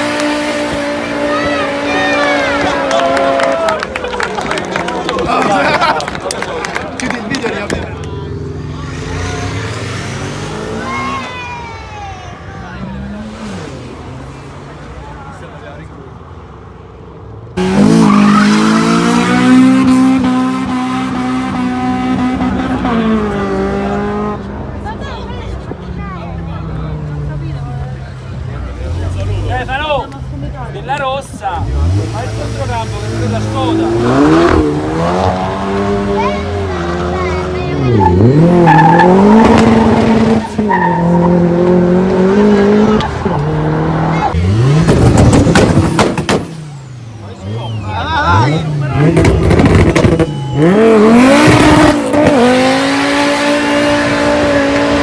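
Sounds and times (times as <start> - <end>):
car engine revving: 0.0 - 3.8, 6.6 - 11.5, 12.8 - 15.3, 17.5 - 25.3, 31.4 - 55.0
tyres skidding and squealing: 0.0 - 55.0.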